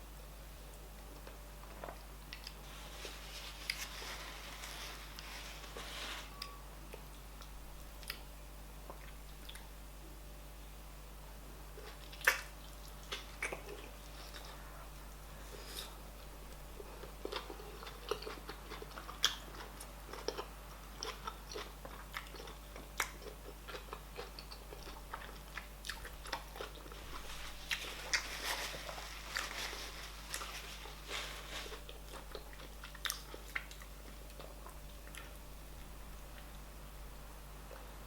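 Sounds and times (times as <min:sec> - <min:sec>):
person chewing with wet smacks: 0:06.9 - 0:08.2, 0:08.8 - 0:09.7, 0:11.8 - 0:14.8, 0:15.5 - 0:31.1, 0:31.7 - 0:36.6.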